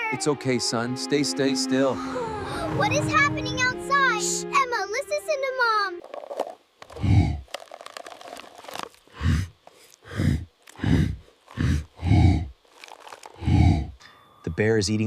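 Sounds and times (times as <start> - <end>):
faint crunching: 6.0 - 14.2
bear grunting: 6.9 - 7.5, 9.1 - 12.6, 13.3 - 14.0.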